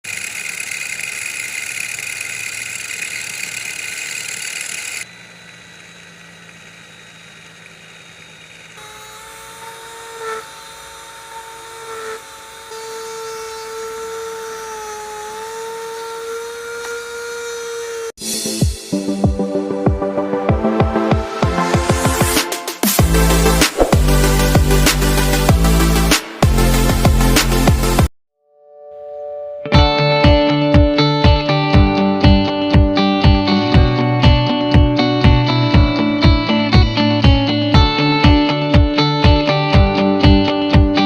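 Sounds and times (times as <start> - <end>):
power tool grinding hiss: 0.0 - 18.2
quiet tool hum: 0.0 - 18.2
small motor whining: 0.0 - 18.2.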